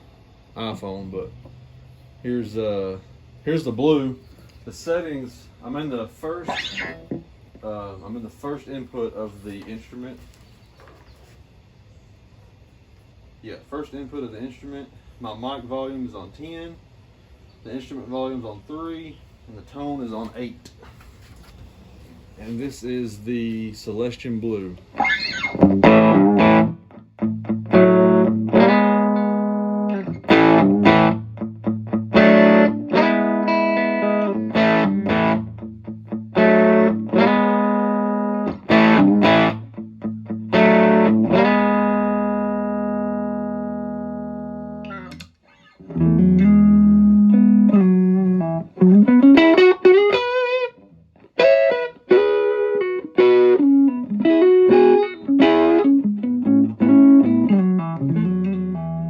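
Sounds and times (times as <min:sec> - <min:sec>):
electric guitar through amp: 0:24.9 - 0:59.0.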